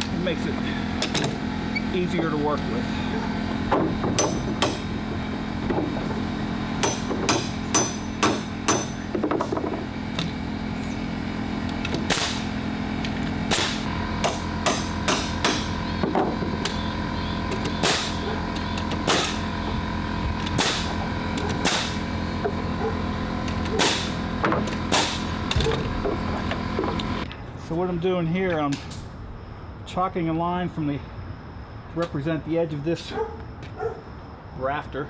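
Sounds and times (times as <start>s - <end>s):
steady hum: 0.0s - 35.0s
nails driven into wooden boards: 13.5s - 16.8s, 17.6s - 18.2s, 18.9s - 19.4s, 20.5s - 20.9s, 21.6s - 22.0s, 23.7s - 25.6s.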